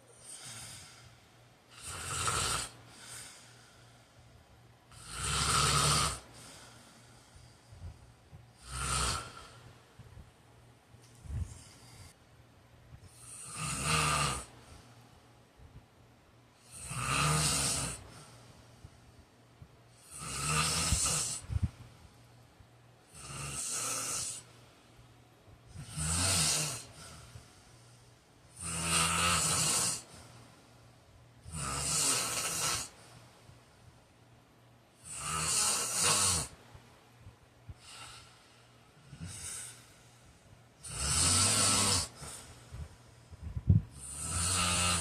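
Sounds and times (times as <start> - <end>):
man snoring: 0.2 - 1.1, 1.7 - 3.6, 4.9 - 6.5, 8.6 - 9.6, 13.1 - 14.5, 16.6 - 18.2, 20.0 - 21.5, 23.1 - 24.5, 25.7 - 27.3, 28.5 - 30.3, 31.4 - 33.0, 35.0 - 36.6, 37.8 - 39.9, 40.8 - 42.5, 43.9 - 45.0.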